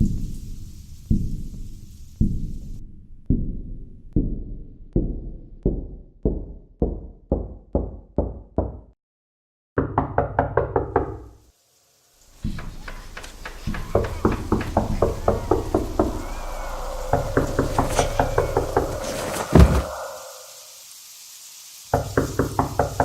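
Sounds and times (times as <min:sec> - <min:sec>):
deep booming knocks: 0:12.4 - 0:20.0
sharp bright knocks: 0:12.4 - 0:20.4.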